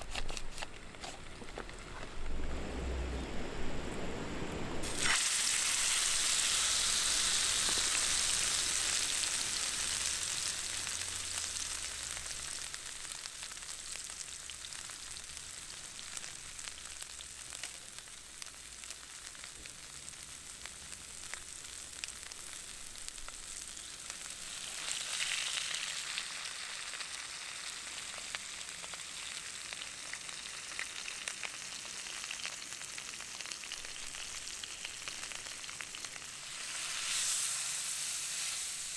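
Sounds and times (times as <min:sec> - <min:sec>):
sharp pops of frying: 0:04.8 - 0:27.2
food sizzling in frying pan: 0:04.8 - 0:38.9.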